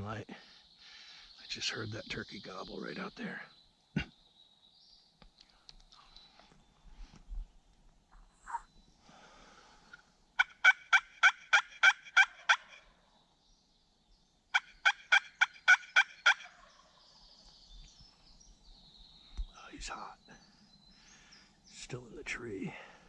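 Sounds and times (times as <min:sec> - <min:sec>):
turkey call yelps: 0:08.4 - 0:08.7, 0:10.4 - 0:13.0, 0:14.5 - 0:16.9.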